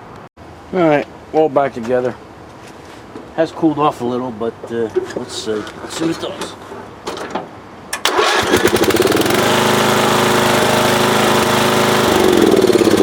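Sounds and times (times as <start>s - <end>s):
engine starter cranking: 7.9s - 9.6s
lawn tractor engine running: 7.9s - 13.0s.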